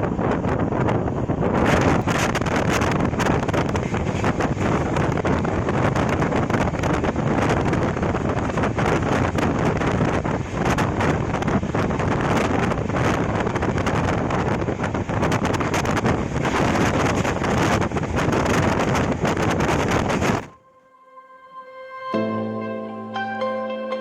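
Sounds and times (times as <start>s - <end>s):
train wheel and running noise: 0.0s - 20.6s
wind buffeting microphone: 0.0s - 20.6s.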